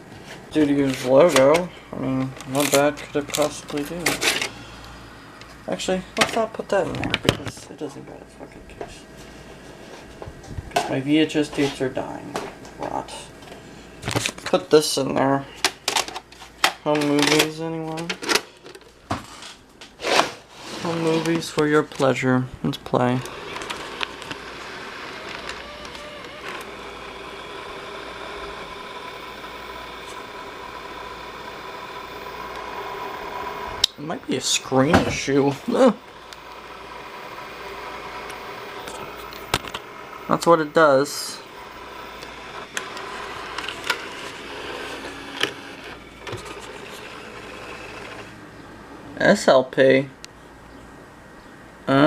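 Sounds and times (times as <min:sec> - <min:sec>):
tape mechanism humming: 0:00.0 - 0:18.9, 0:20.0 - 0:48.8
tape transport clicks: 0:00.6 - 0:05.6, 0:23.0 - 0:48.3.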